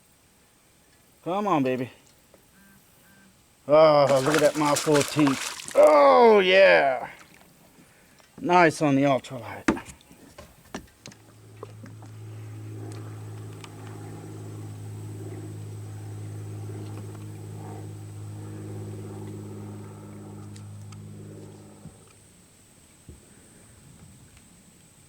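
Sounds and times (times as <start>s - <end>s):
motor humming: 10.9s - 22.3s.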